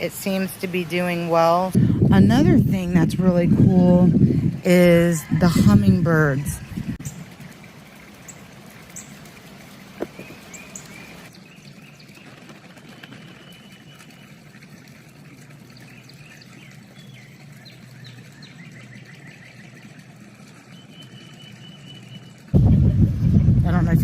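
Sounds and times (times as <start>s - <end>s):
small birds chirping: 10.0s - 14.4s, 15.6s - 22.4s
steady low hum: 15.7s - 24.0s.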